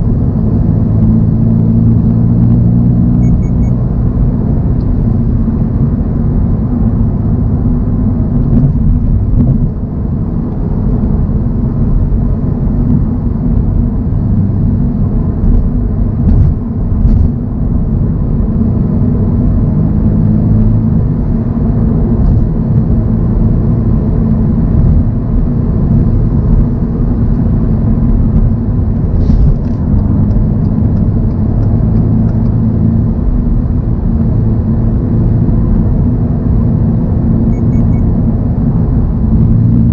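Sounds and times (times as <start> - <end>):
car engine droning at cruise: 0.0 - 39.9
tyre and road noise: 0.0 - 39.9.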